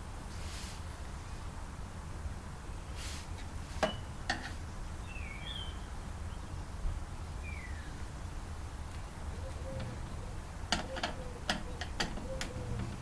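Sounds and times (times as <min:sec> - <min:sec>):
bird chirping: 0:03.8 - 0:06.8, 0:07.4 - 0:08.1, 0:09.2 - 0:13.0.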